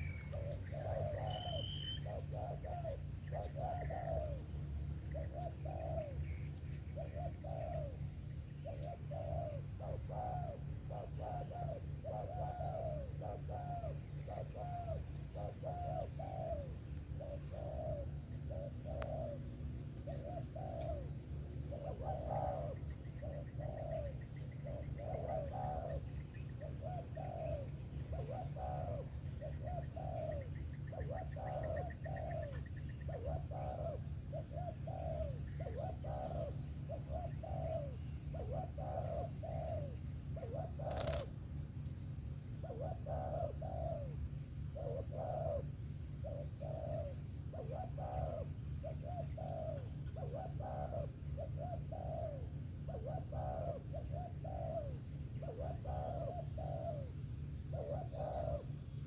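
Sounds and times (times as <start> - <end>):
dove cooing: 0.0 - 41.4, 42.4 - 59.0.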